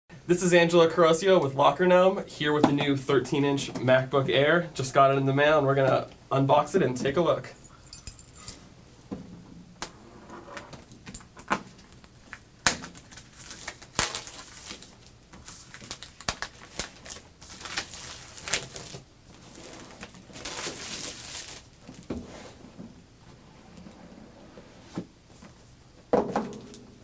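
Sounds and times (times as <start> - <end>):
wrapping rustling and crinkling: 10.8 - 24.0.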